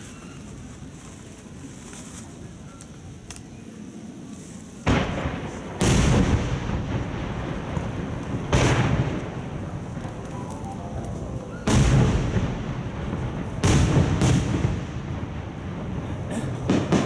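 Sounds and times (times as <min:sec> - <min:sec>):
firework booms with rolling rumble: 0:04.8 - 0:10.6, 0:11.2 - 0:17.0.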